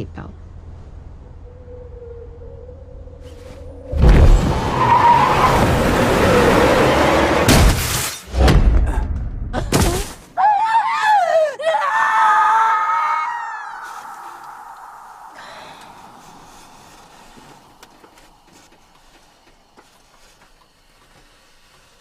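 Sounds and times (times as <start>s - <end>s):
wavering high-pitched tone: 1.0s - 4.0s, 13.7s - 16.6s
car crash impact: 5.4s - 8.7s.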